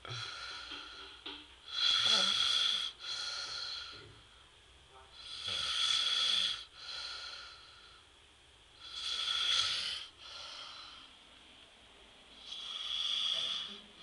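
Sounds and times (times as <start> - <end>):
soft breathing: 0.0 - 8.2, 8.8 - 11.4, 12.3 - 14.0
man snoring: 1.7 - 4.0, 5.2 - 7.6, 8.8 - 10.9, 12.4 - 13.8.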